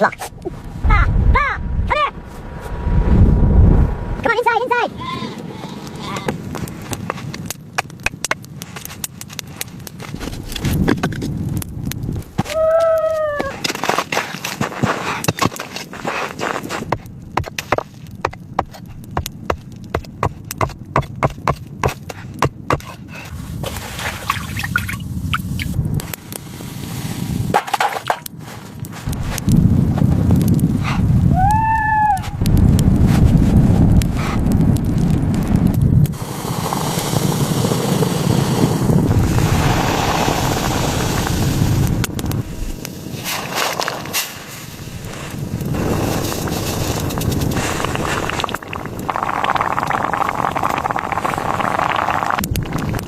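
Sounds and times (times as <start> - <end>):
strong wind buffeting microphone: 0.1 - 8.7, 28.3 - 53.0
low steady rumble: 0.4 - 4.4.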